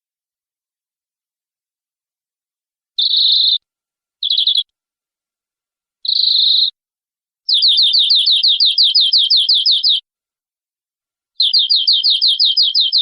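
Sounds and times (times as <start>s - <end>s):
canary singing trills: 3.0s - 3.6s, 4.2s - 4.7s, 6.0s - 6.8s, 7.5s - 10.1s, 11.4s - 13.0s.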